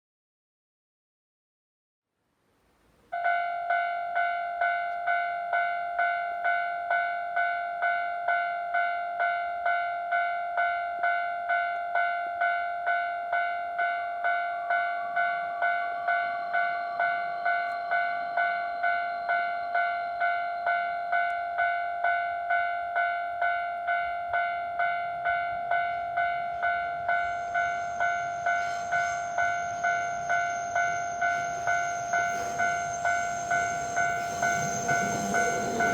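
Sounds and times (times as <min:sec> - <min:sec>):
level-crossing warning bell: 0:03.1 - 0:35.9
high steady tone: 0:14.2 - 0:35.9
train rumble: 0:22.8 - 0:35.9.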